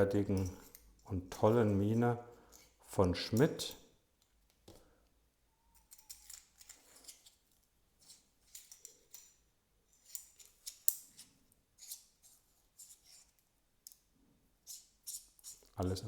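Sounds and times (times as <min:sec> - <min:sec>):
small metallic clicks and scrapes: 0:00.3 - 0:01.8, 0:02.4 - 0:04.7, 0:05.7 - 0:15.8.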